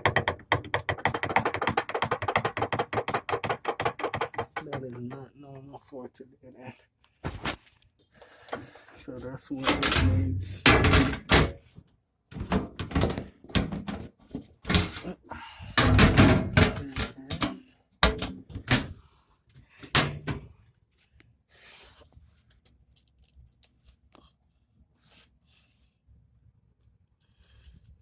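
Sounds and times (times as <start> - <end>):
knocks bangs and clatters: 9.6 - 11.6, 15.8 - 18.9.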